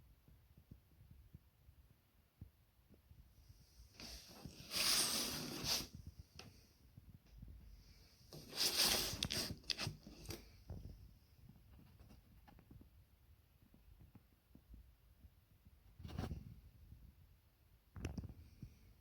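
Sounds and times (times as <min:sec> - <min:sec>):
rustling and scraping: 0:03.6 - 0:06.6, 0:07.8 - 0:12.9.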